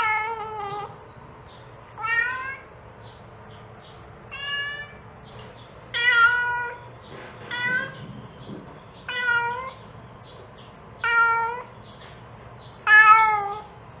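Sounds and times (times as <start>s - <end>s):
cat meowing: 0.0s - 1.0s, 1.9s - 2.7s, 4.3s - 5.1s, 5.9s - 6.9s, 7.5s - 8.0s, 9.0s - 9.8s, 11.0s - 11.7s, 12.8s - 13.8s.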